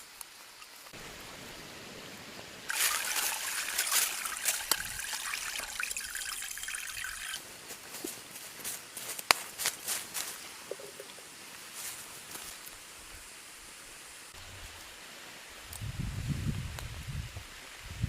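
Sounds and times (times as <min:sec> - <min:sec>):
water trickling: 0:02.7 - 0:07.4.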